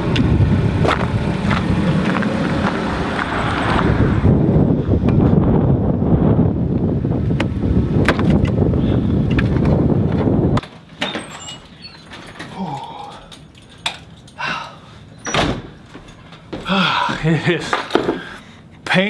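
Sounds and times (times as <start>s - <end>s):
wind buffeting microphone: 0.0s - 10.6s.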